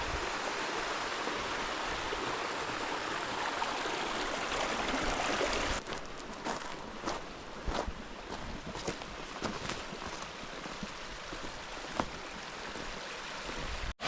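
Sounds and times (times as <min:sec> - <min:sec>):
creek rapids rushing: 0:00.0 - 0:05.8.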